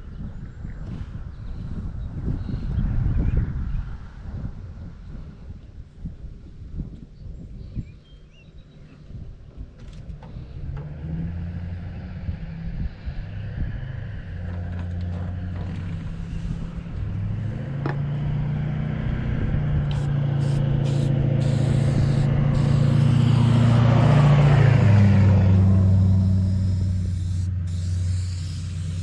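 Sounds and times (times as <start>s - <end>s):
vehicle engine passing: 15.3s - 29.0s.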